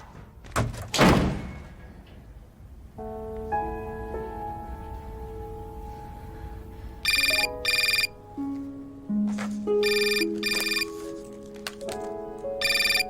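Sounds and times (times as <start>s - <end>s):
background music: 2.7s - 13.0s
telephone ringing: 7.0s - 8.1s, 9.8s - 11.0s, 12.6s - 13.0s.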